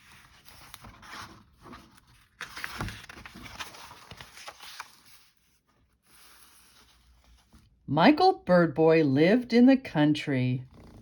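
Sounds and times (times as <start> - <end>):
paper rustling: 0.0 - 7.8.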